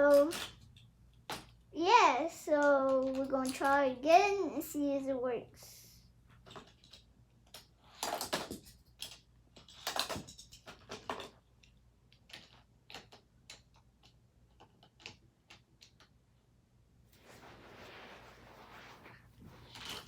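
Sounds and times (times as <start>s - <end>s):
toy cars clicking and clattering: 0.0s - 1.6s, 2.2s - 4.0s, 6.4s - 16.2s.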